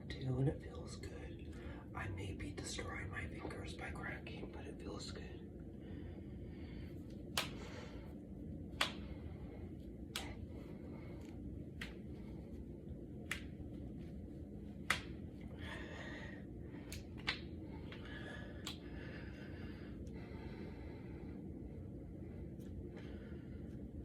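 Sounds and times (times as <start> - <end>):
knuckles cracking: 7.0 - 8.0, 8.7 - 9.3, 10.1 - 12.3, 13.2 - 13.7, 14.8 - 15.8, 16.7 - 19.0.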